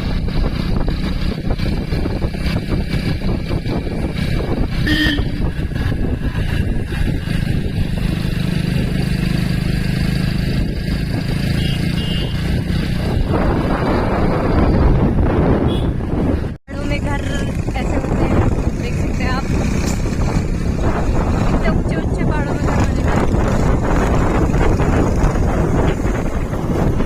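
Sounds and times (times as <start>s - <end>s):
motorcycle engine running: 0.0s - 27.0s
wind rushing on microphone: 0.0s - 27.0s.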